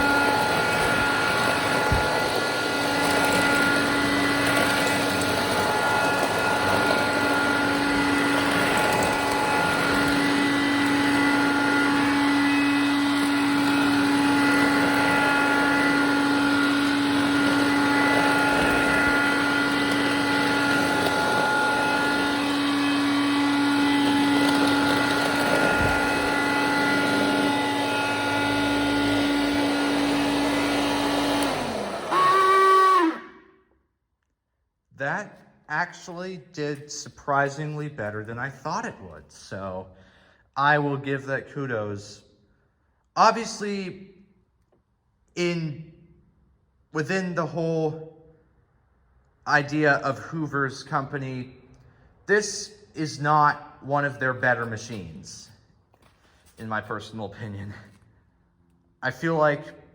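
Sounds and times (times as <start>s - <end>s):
vacuum cleaner motor whine: 0.0s - 33.6s.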